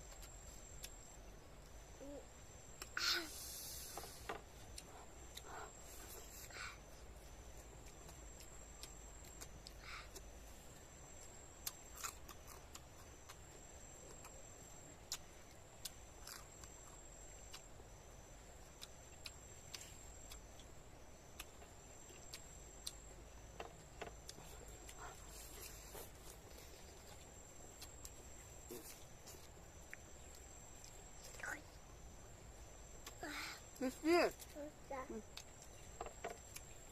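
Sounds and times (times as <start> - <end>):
faint high-pitched whine: 0.0 - 36.9
chewing crunches and clicks: 7.2 - 10.3, 11.1 - 18.0, 18.6 - 31.6, 32.9 - 33.2, 35.2 - 36.9.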